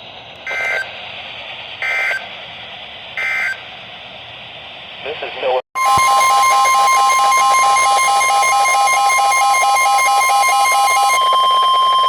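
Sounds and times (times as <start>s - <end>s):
steady pure alarm tone: 0.5s - 1.0s, 1.8s - 2.3s, 3.2s - 3.7s, 5.8s - 12.0s.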